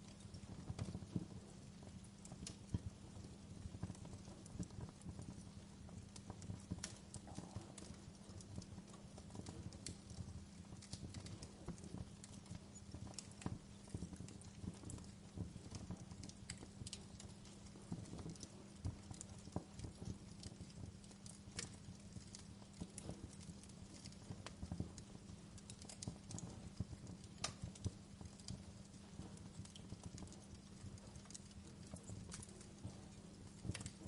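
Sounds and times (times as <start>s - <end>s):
low steady hum: 0.0s - 34.0s
wood fire crackling: 0.0s - 34.0s.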